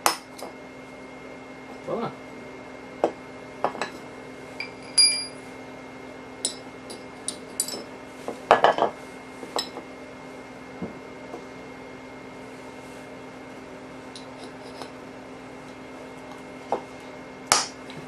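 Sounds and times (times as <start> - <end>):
steel tools clinking: 4.6 - 5.4.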